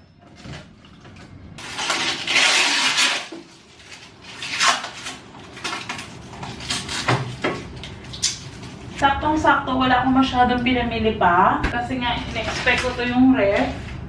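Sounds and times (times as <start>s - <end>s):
plastic packaging rustling: 0.3s - 9.0s.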